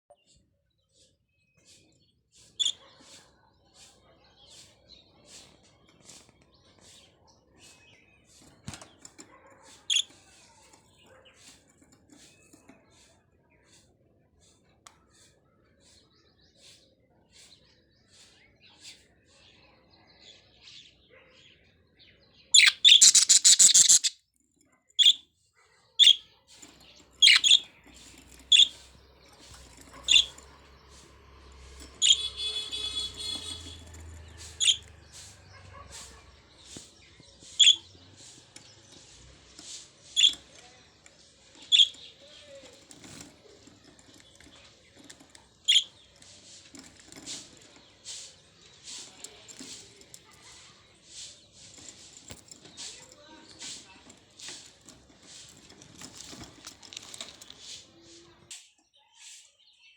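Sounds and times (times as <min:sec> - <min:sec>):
high budgerigar chirps: 0:02.4 - 0:03.2, 0:06.8 - 0:11.6, 0:22.4 - 0:24.2, 0:25.0 - 0:25.3, 0:26.0 - 0:55.4
budgerigars chattering: 0:22.6 - 0:24.2, 0:25.0 - 0:25.2, 0:26.0 - 0:26.2, 0:27.2 - 0:30.7, 0:31.9 - 0:38.4, 0:40.2 - 0:40.5, 0:41.6 - 0:42.1, 0:45.7 - 0:45.9.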